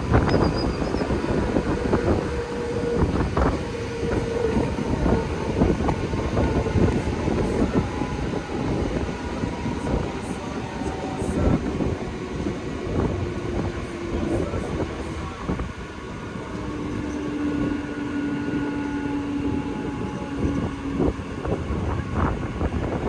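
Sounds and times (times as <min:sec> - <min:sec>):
train rumbling on rails: 0:00.0 - 0:23.0.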